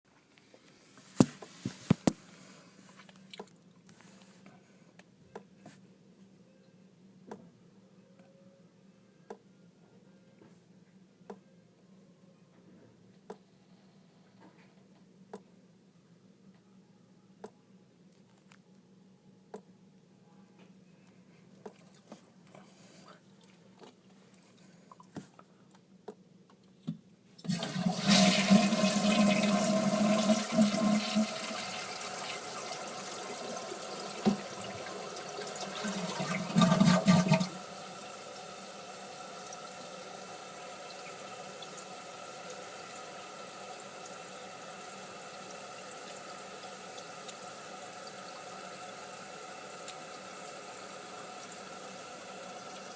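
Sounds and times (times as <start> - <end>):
toilet flushing: 27.4 - 52.9
toilet tank refilling hiss: 27.4 - 52.9.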